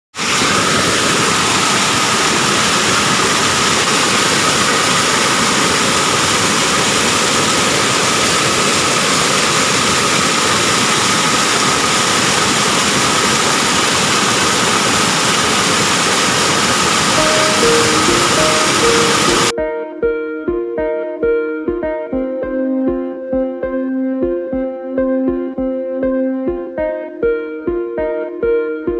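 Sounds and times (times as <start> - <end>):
small waterfall rushing: 0.1 - 19.5.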